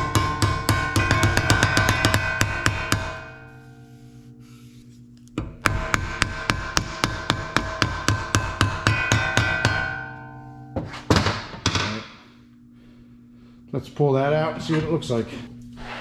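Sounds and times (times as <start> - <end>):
hammer ringing on steel sheet: 0.0 - 4.2, 5.5 - 12.0.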